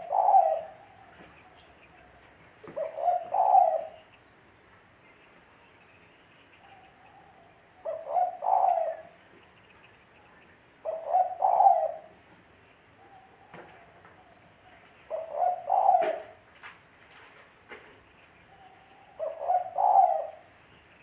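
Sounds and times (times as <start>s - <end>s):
dove cooing: 0.0s - 4.1s, 6.6s - 9.2s, 10.8s - 12.3s, 13.0s - 16.5s, 18.5s - 20.6s.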